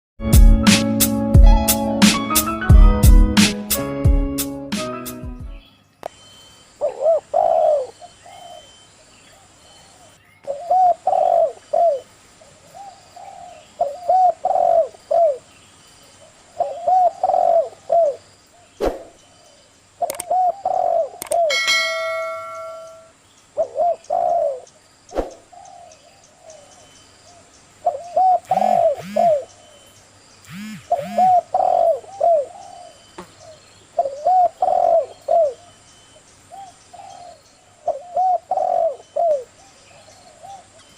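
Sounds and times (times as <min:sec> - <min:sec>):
dove cooing: 0:06.8 - 0:08.7, 0:10.5 - 0:12.1, 0:12.7 - 0:15.4, 0:16.6 - 0:18.2, 0:20.0 - 0:24.7, 0:27.9 - 0:29.6, 0:30.5 - 0:35.8, 0:36.6 - 0:40.8.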